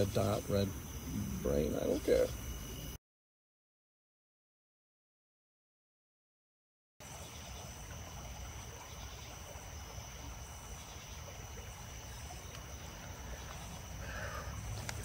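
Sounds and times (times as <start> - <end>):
background hiss: 0.0 - 3.0.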